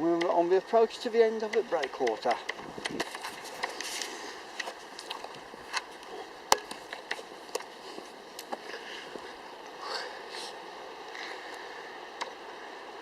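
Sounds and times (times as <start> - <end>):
steady faint hiss: 0.0 - 13.0
footsteps clicking and knocking: 0.1 - 9.4.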